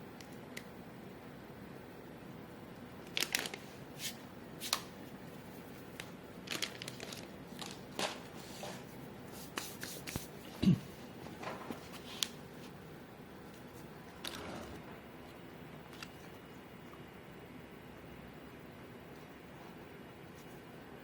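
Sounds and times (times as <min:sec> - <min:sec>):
electric fan hissing: 0:00.0 - 0:21.0.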